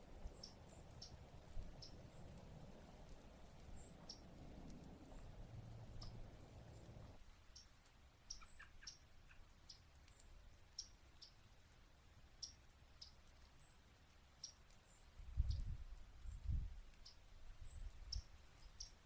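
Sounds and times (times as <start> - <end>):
warbler chip calls: 0.2 - 2.9, 3.6 - 7.7, 8.3 - 9.8, 17.0 - 19.0.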